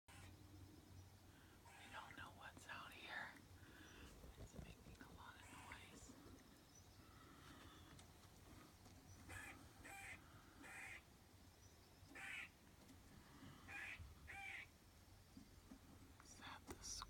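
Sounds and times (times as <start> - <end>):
faint animal barking: 9.2 - 11.1, 12.1 - 12.6, 13.6 - 14.7.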